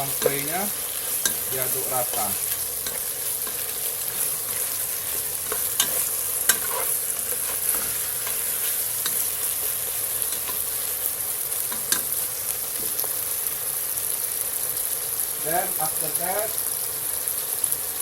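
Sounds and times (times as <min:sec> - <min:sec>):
utensil scraping against a pan: 0:00.0 - 0:10.8
food sizzling in a frying pan: 0:00.0 - 0:18.0.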